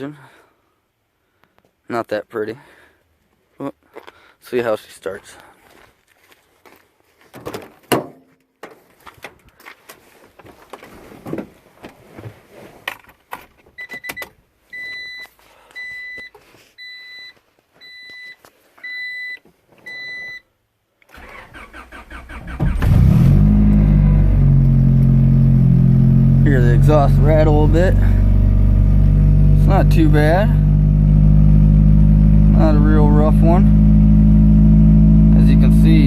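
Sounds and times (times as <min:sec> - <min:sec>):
car warning chime beeps: 0:13.8 - 0:20.4
car starter cranking: 0:21.1 - 0:25.1
car engine idling: 0:22.6 - 0:36.0.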